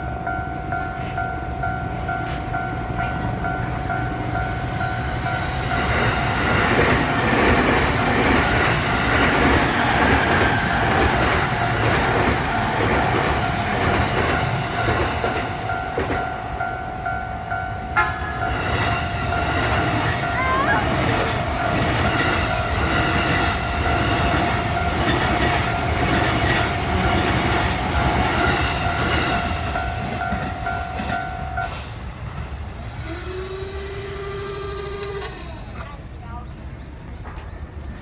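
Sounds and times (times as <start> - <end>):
level crossing warning bell: 0.0 - 31.8
electric train passing: 0.0 - 38.0
train wheels clattering over rail joints: 18.7 - 31.2.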